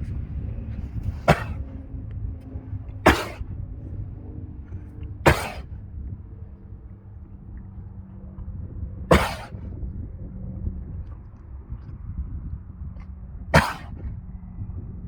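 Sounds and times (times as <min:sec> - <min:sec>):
dog coughing: 0:00.9 - 0:01.8, 0:02.9 - 0:03.5, 0:05.2 - 0:05.8, 0:09.1 - 0:09.6, 0:13.5 - 0:14.1.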